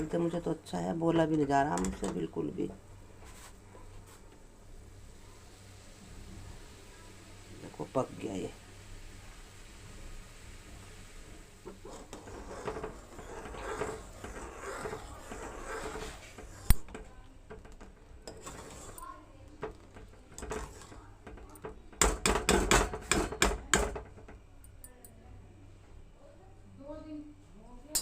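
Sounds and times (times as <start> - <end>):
utensils clinking against cookware: 11.8 - 24.4.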